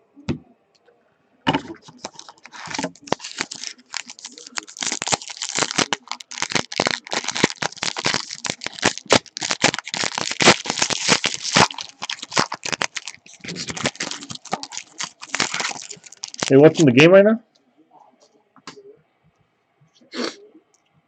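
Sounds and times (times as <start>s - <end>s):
cards being handled: 1.7s - 16.8s
card pack wrappers crinkling: 1.7s - 17.0s.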